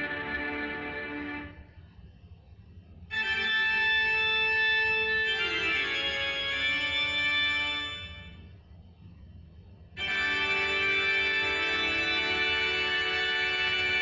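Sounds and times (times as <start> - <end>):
organ-toned keyboard jingle: 0.0 - 1.6, 3.1 - 8.3, 10.0 - 14.0.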